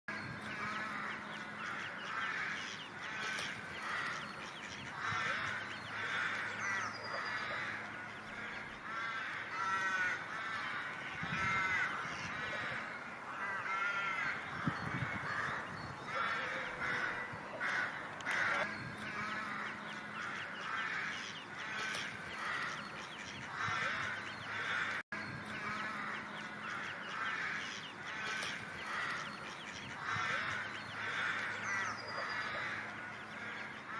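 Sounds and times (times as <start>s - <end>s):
ducks quacking: 0.1s - 33.9s.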